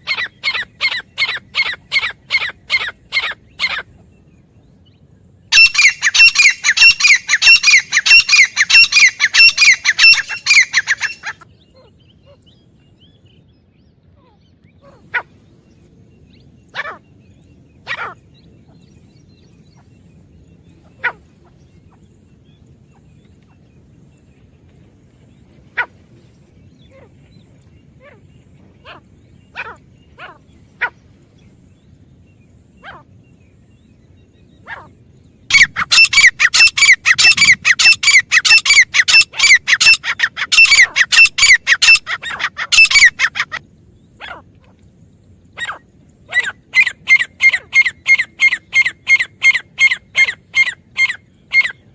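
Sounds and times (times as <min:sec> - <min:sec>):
bird calling shrill notes: 0:05.5 - 0:11.4, 0:35.5 - 0:43.6.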